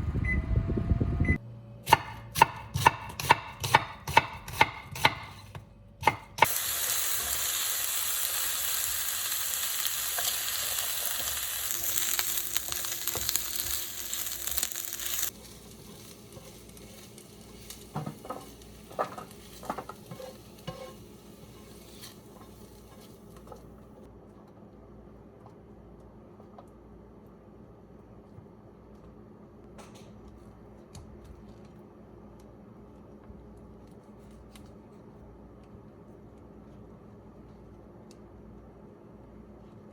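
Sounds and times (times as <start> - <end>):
knife chopping on cutting board: 1.9 - 6.5
food sizzling in frying pan: 6.4 - 23.2.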